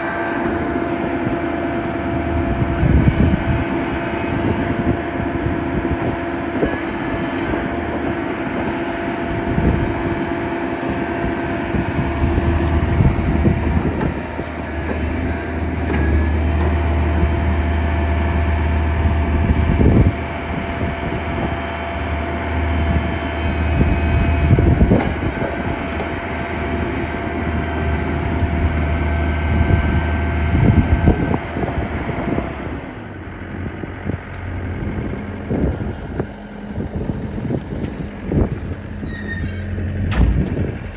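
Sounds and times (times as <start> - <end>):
excavator diesel engine running: 0.0 - 40.9
deep low hum: 11.0 - 32.6.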